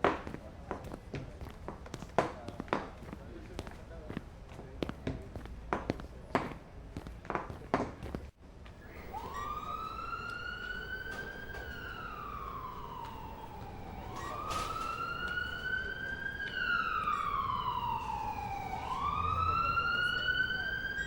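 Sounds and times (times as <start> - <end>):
ambulance siren wailing: 8.8 - 21.0.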